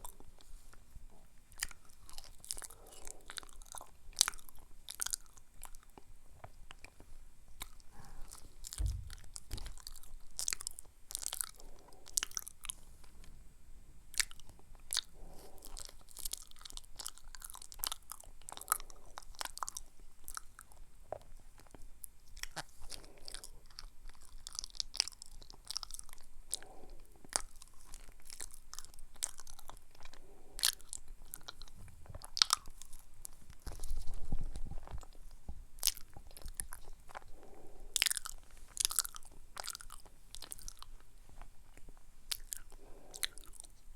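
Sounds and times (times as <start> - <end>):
wet chewing mouth clicks: 1.5 - 6.1, 35.8 - 43.8
low bump: 8.7 - 9.9.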